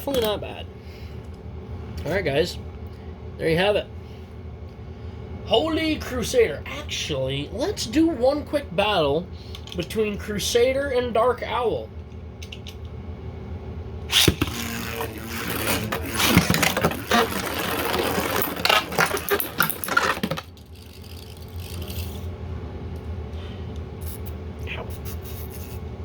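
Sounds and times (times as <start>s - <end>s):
spinning tops clashing: 14.1s - 22.3s.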